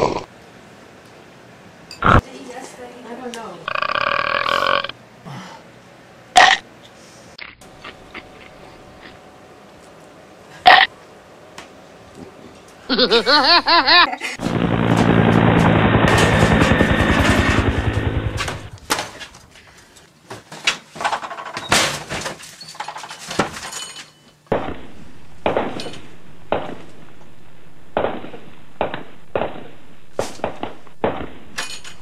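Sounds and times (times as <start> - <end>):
loud low rumble: 14.4 - 18.8, 24.5 - 31.6
sharp bangs: 14.4 - 19.1, 24.5 - 32.0
crashes and breaking impacts: 24.5 - 27.2.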